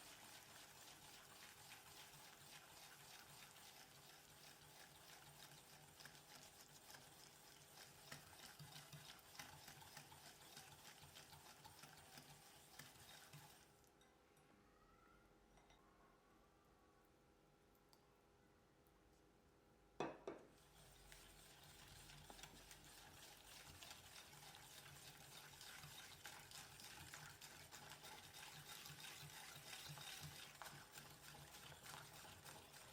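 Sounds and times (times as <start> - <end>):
stirring batter in mixing bowl: 0.0 - 14.1, 20.2 - 32.9.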